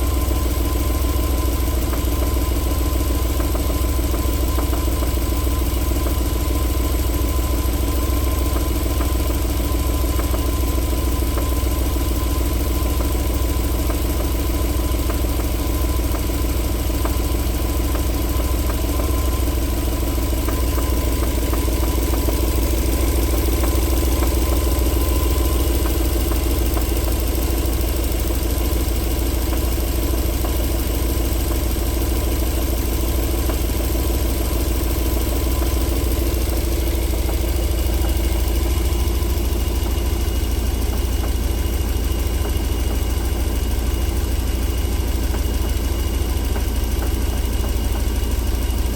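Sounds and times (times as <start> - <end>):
car engine idling with knock: 0.0 - 48.9.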